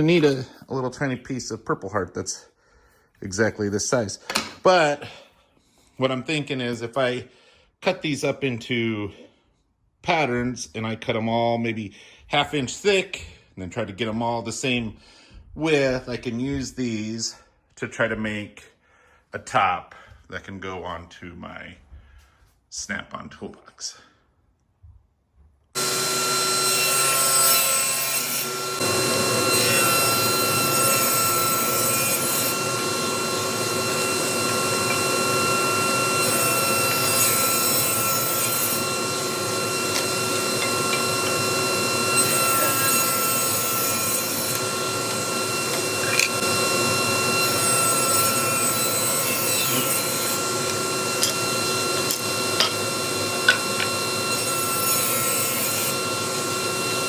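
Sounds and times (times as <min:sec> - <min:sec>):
power saw whining: 0:25.8 - 0:57.0
saw cutting wood hiss: 0:25.8 - 0:57.0.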